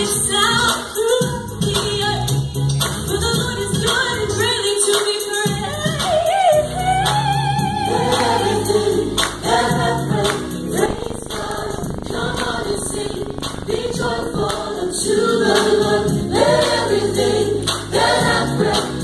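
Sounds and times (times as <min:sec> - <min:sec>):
rhythmic percussion: 0:00.0 - 0:19.0
vocal group singing gospel: 0:06.7 - 0:19.0.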